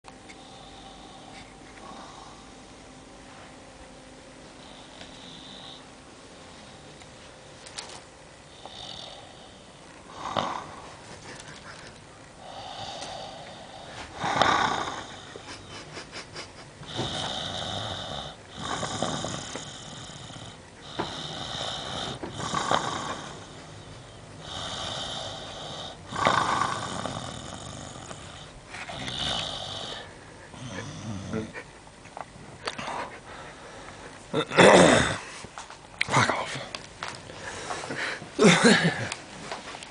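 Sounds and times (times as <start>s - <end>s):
man snoring heavily: 4.6s - 5.8s, 8.5s - 10.9s, 12.4s - 15.7s, 16.8s - 31.5s
fluttering snore rattle: 16.9s - 23.7s, 24.5s - 31.5s.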